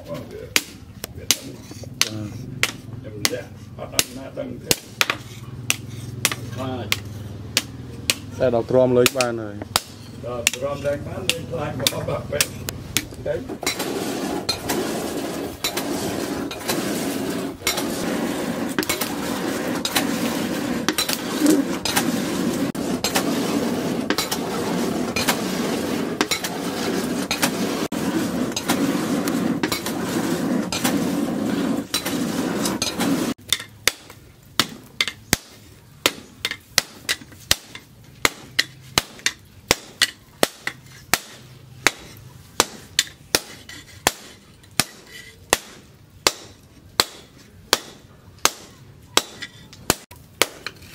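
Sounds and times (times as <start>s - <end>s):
hammer striking steel on anvil: 4.0s - 8.3s, 33.5s - 50.9s.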